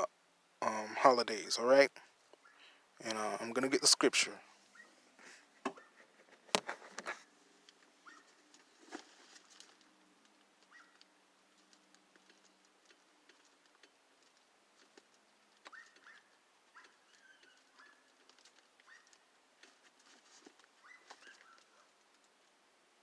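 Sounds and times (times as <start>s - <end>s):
faint clicks and rustles: 4.3s - 23.0s.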